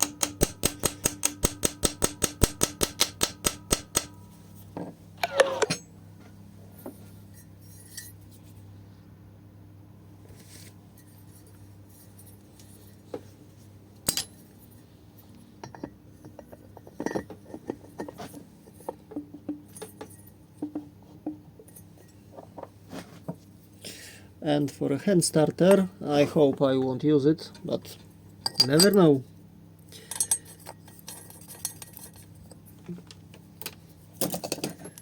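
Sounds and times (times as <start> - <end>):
faint steady hum: 0.0 - 35.0
metal tools clinking and tapping: 7.3 - 8.4, 14.0 - 14.5, 15.6 - 22.7, 28.4 - 29.2, 30.0 - 32.8.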